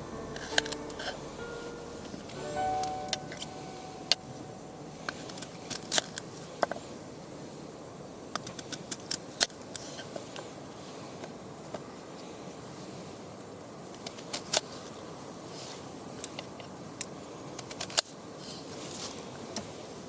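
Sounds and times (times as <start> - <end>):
brief tonal sound: 0.0 - 6.0
steady low hiss: 0.0 - 17.6.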